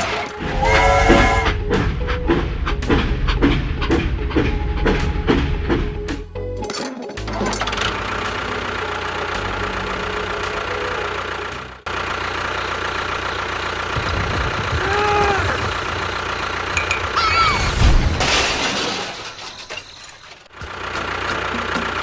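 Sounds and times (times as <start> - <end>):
motor running: 0.4 - 2.0.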